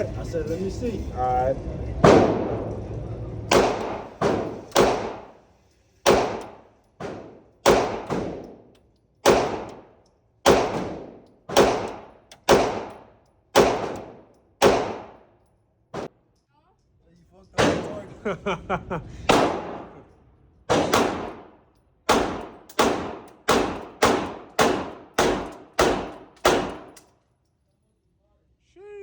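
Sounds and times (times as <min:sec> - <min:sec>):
gunshots with echo: 0:02.0 - 0:02.8, 0:03.5 - 0:05.4, 0:06.1 - 0:08.6, 0:09.2 - 0:13.0, 0:13.6 - 0:15.2, 0:17.6 - 0:18.0, 0:19.2 - 0:20.0, 0:20.7 - 0:27.0.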